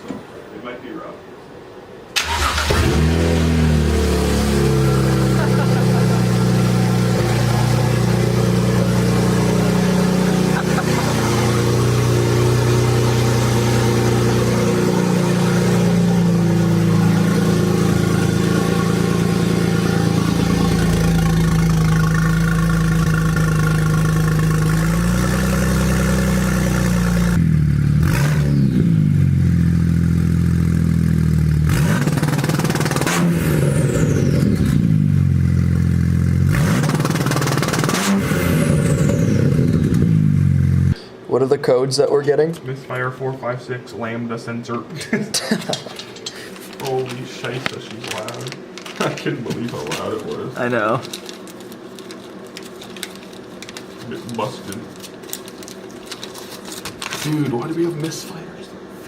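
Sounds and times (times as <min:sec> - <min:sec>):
car engine revving: 0:02.2 - 0:41.0.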